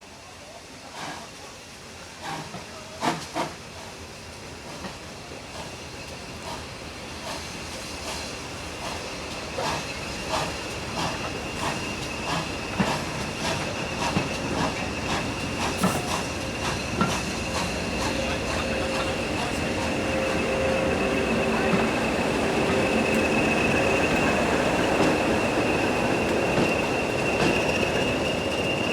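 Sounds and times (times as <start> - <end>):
steam locomotive chuffing: 0.4 - 28.9
steam hissing: 0.8 - 28.9
steady high tone: 17.4 - 28.9.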